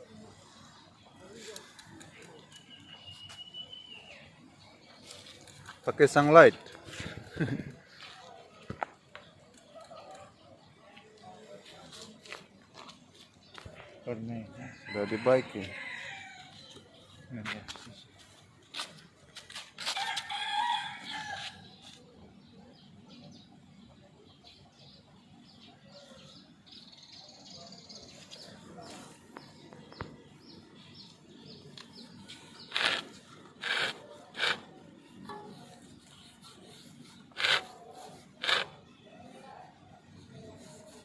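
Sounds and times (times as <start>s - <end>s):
rooster crowing: 14.8s - 16.6s, 20.0s - 21.6s
short rubbing noises: 32.2s - 38.8s.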